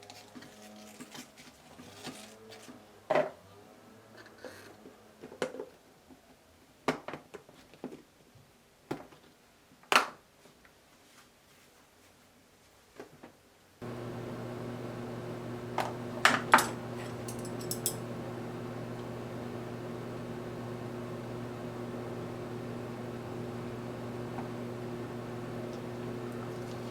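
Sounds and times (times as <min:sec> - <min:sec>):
kitchen utensils and dishes clicking: 0:16.3 - 0:18.1.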